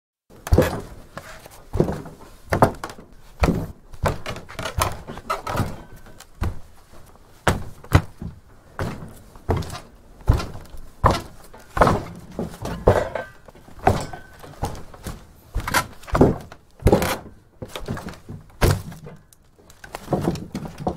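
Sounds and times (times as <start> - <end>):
footsteps on wooden floorboards: 0.4 - 19.2.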